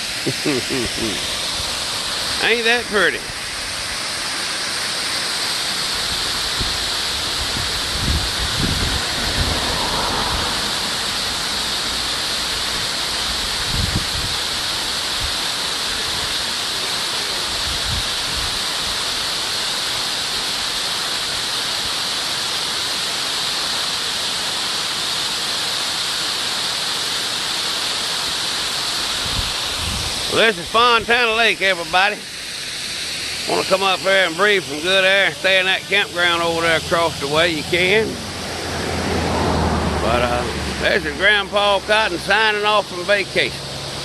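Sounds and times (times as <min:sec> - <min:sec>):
waterfall roaring: 0:00.0 - 0:44.0
wind thumps on microphone: 0:06.4 - 0:10.5, 0:13.6 - 0:14.4, 0:29.2 - 0:30.3.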